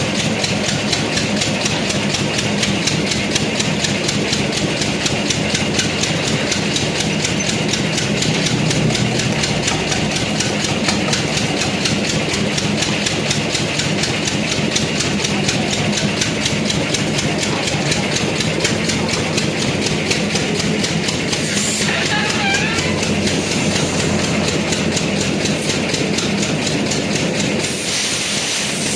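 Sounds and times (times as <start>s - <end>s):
machine humming and clicking: 0.0s - 28.9s.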